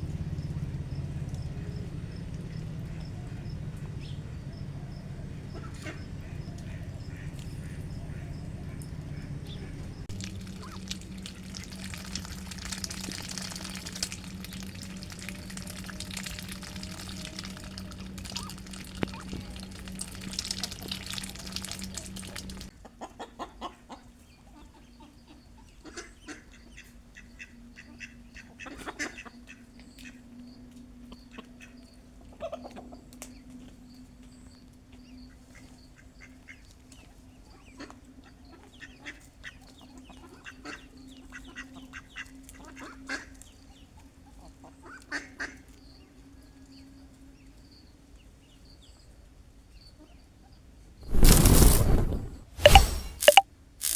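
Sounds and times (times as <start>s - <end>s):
steady low hum: 0.0s - 22.7s
chickens clucking: 4.7s - 25.2s
ducks quacking: 5.4s - 23.9s.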